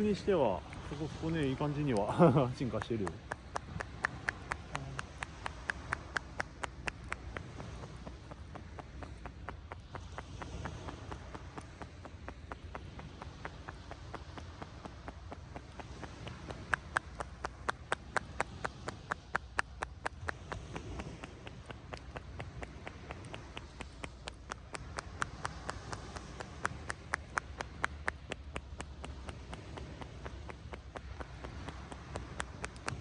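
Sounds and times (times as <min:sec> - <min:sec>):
hands tapping on back: 0:01.9 - 0:33.0.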